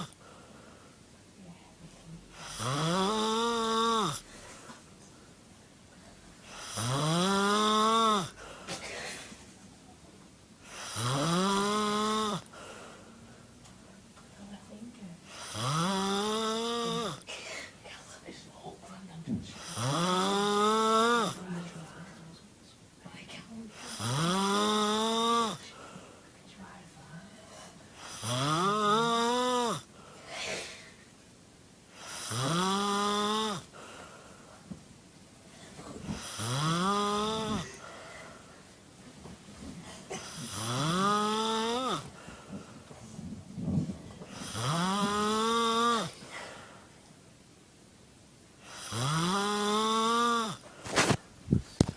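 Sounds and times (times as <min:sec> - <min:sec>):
person snoring loudly: 0:02.4 - 0:04.3, 0:06.5 - 0:08.4, 0:10.7 - 0:12.5, 0:15.4 - 0:17.2, 0:19.6 - 0:21.4, 0:23.8 - 0:25.6, 0:28.0 - 0:29.9, 0:32.0 - 0:33.7, 0:36.2 - 0:37.8, 0:40.2 - 0:42.1, 0:44.3 - 0:46.2, 0:48.6 - 0:50.6
soft breath: 0:12.5 - 0:14.0, 0:25.6 - 0:28.0, 0:29.9 - 0:31.1, 0:33.7 - 0:34.7, 0:37.4 - 0:38.8, 0:42.0 - 0:44.4, 0:46.1 - 0:47.1.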